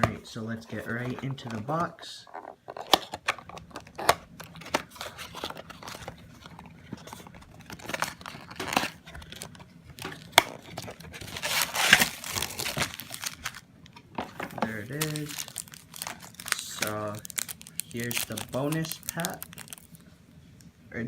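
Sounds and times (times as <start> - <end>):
rustling: 4.0 - 20.1
cardboard box tearing: 10.3 - 13.6.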